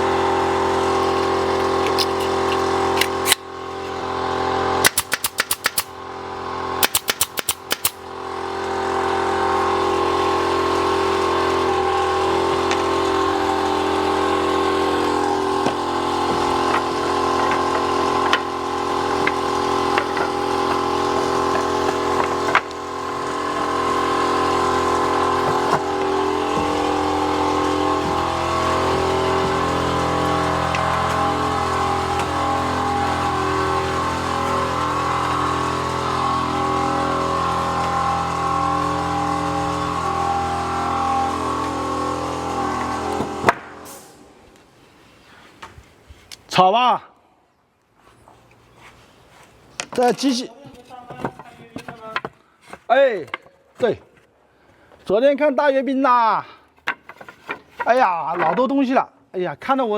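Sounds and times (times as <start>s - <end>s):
workshop machine humming: 0.0s - 44.8s
sharp clicks: 4.8s - 5.9s, 6.8s - 8.0s.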